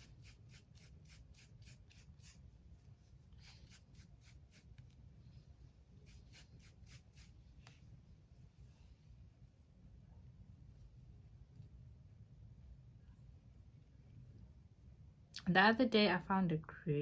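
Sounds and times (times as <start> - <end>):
brush strokes through hair: 0.0 - 10.0.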